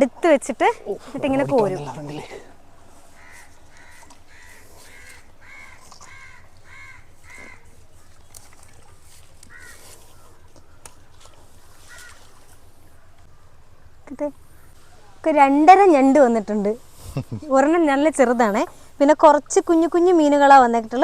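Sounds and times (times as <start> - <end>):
crow cawing: 3.0 - 8.2, 9.4 - 13.6.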